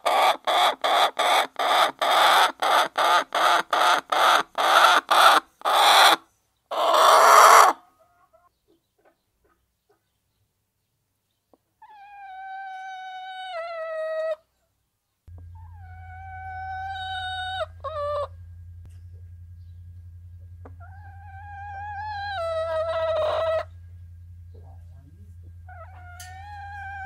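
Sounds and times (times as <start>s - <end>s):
low steady hum: 15.3s - 27.0s
animal long pitched calls: 15.6s - 18.4s, 20.8s - 23.8s, 25.6s - 27.0s.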